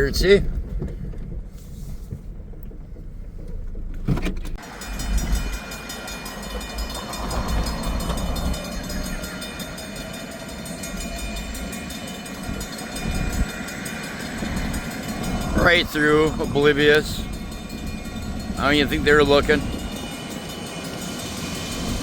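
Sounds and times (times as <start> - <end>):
low engine rumble: 0.0 - 22.0
railroad crossing bell ringing: 4.6 - 22.0.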